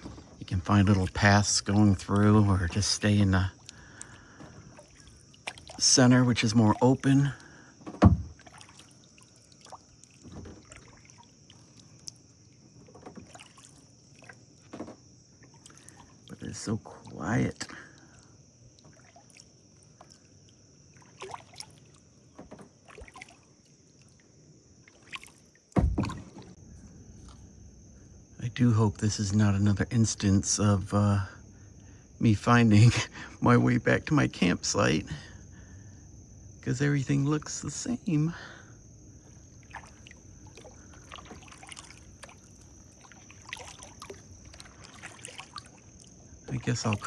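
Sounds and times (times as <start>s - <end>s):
paddle dipping in water: 0.0s - 27.6s, 38.9s - 47.0s
thump: 7.8s - 8.4s, 25.8s - 26.6s.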